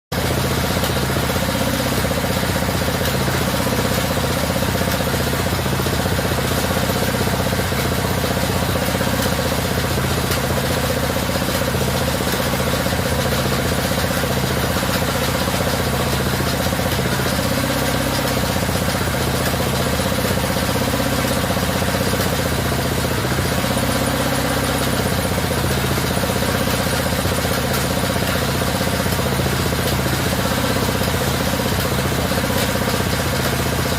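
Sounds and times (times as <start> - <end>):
motor hum: 0.1 - 33.9
mechanical clatter: 0.2 - 33.9.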